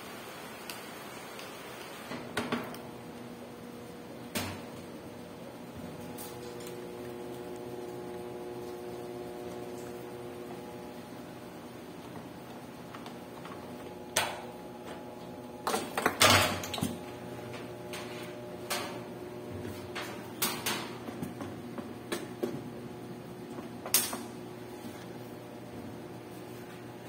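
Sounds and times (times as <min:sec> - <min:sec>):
steady background hum: 0:00.0 - 0:27.0.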